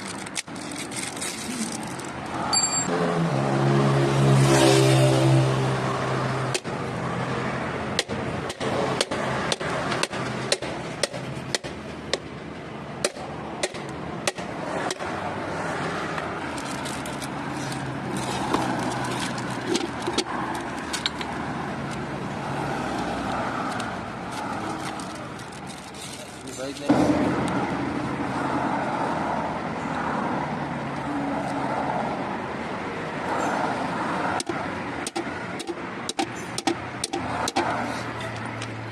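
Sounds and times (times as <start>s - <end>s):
car rolling noise: 14.6s - 29.4s
sharp clicks or knocks: 34.4s - 38.8s.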